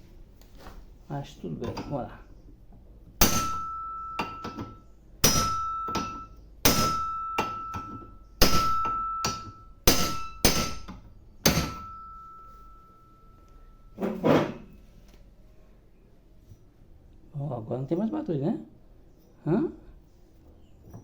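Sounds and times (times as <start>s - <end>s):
metallic strikes ringing: 3.2s - 13.8s.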